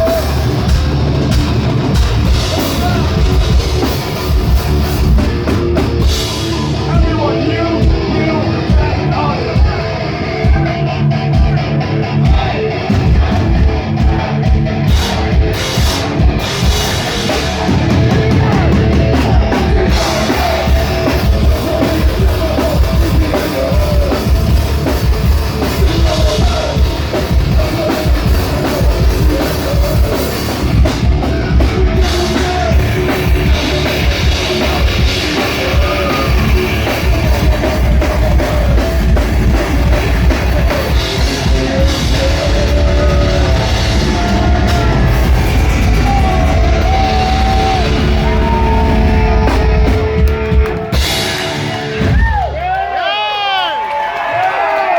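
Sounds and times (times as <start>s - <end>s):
distorted electric guitars: 0.0s - 53.3s
heavy metal band playing live: 0.0s - 53.6s
fast drums: 0.0s - 53.7s
person singing: 16.9s - 51.4s.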